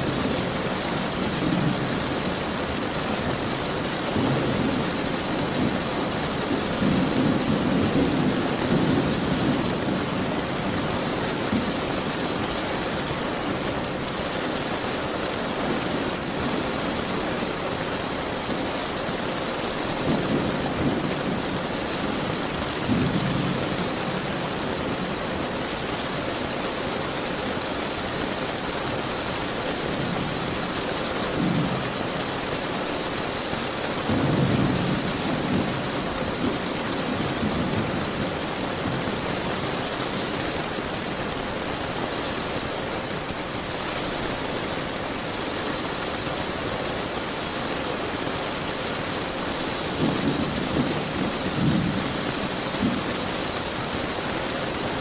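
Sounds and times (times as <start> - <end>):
heavy rain hiss: 0.0 - 55.0
distant thunder rumbles: 3.2 - 11.9, 19.9 - 25.2, 31.3 - 32.2, 34.0 - 39.8, 49.8 - 54.0.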